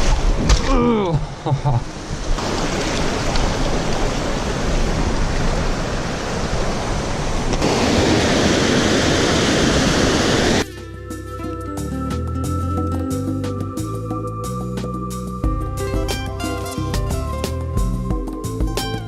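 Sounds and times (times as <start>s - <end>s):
rushing water: 0.0s - 10.7s.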